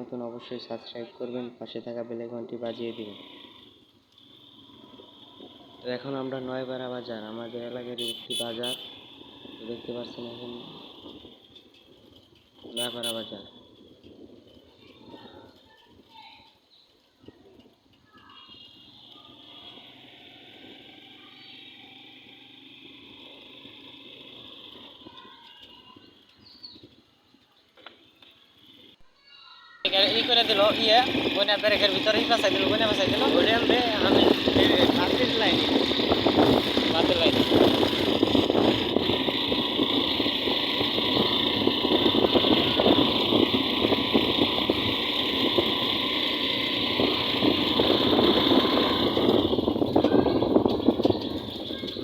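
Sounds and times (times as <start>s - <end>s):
rough road noise: 0.0s - 52.0s
vehicle engine running: 2.6s - 16.0s, 17.5s - 27.0s, 29.9s - 52.0s
faint chirps: 18.1s - 29.9s.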